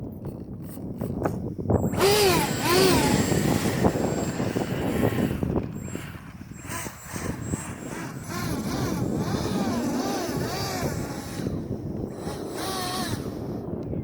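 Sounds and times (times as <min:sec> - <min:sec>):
wind on microphone: 0:00.0 - 0:14.0
electric ducted fan whining: 0:01.0 - 0:14.0.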